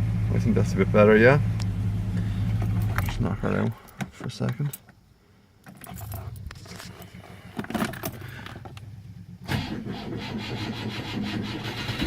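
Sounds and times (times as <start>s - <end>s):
faint engine clicks: 1.5s - 5.0s, 5.6s - 9.6s
starter motor cranking sluggishly: 9.4s - 12.0s.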